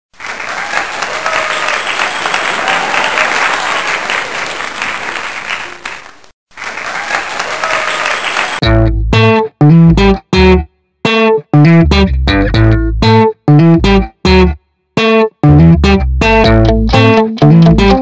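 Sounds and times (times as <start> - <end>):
crowd applause and cheering: 0.1 - 8.6.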